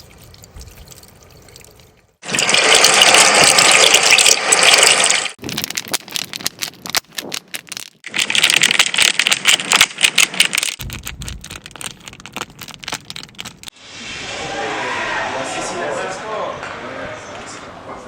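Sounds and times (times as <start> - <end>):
rapid irregular clicking and rattling: 5.4 - 13.7
low rumble: 10.8 - 15.7
loud hissing noise: 13.7 - 16.4.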